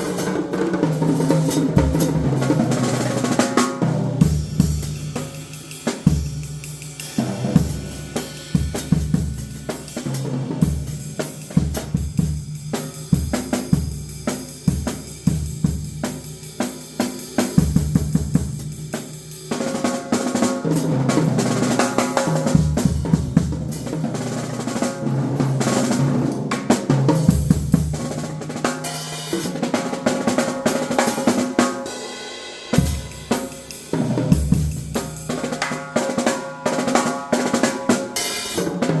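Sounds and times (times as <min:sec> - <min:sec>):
drum kit playing: 0:00.0 - 0:39.0
cymbals crashing: 0:04.3 - 0:10.2, 0:38.2 - 0:38.8.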